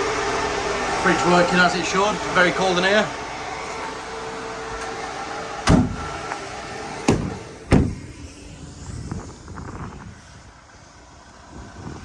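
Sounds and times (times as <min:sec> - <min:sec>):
fridge unit humming: 0:00.0 - 0:09.2
van doors banging shut: 0:05.6 - 0:08.2.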